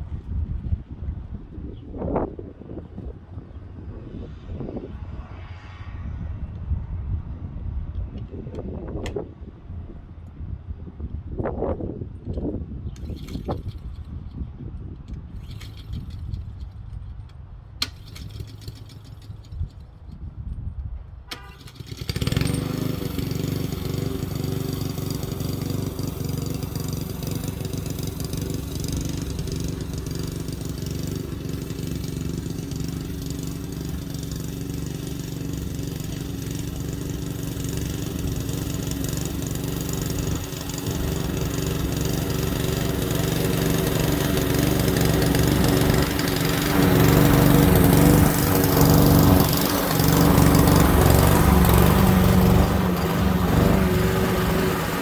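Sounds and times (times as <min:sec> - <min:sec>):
lawn mower engine running: 0:12.2 - 0:20.4, 0:21.0 - 0:55.0.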